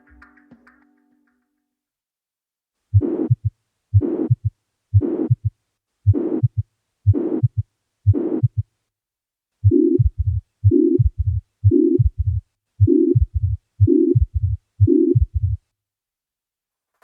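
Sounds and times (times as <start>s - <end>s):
heart murmur: 2.9s - 8.7s, 9.6s - 15.6s
heartbeat thuds: 2.9s - 8.7s, 9.6s - 15.7s.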